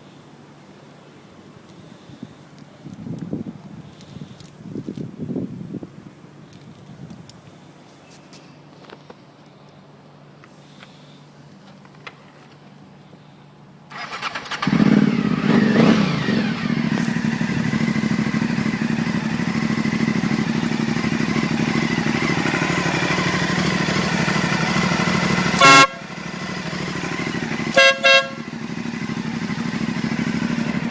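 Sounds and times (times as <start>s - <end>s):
motorcycle engine revving and idling: 13.9s - 30.9s
air horn blasts: 25.2s - 26.5s, 27.6s - 28.8s.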